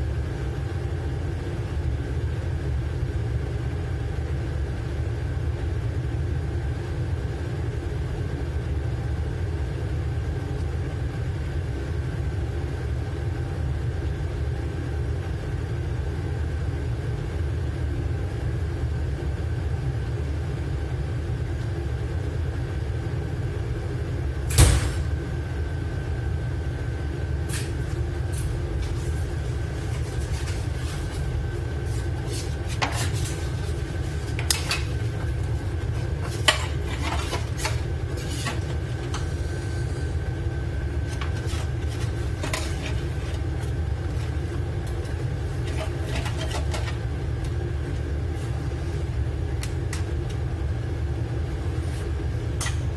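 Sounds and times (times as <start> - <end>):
low machinery drone: 24.4 - 52.8
sharp knock: 24.5 - 25.2
food containers clinking: 27.5 - 39.5, 41.0 - 50.3.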